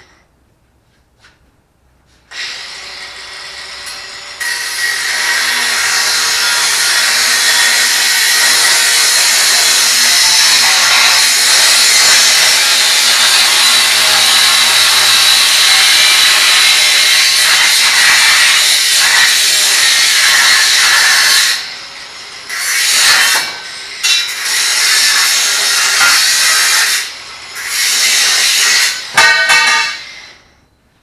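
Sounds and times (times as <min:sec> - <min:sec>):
angle grinder grinding: 0:02.3 - 0:30.4.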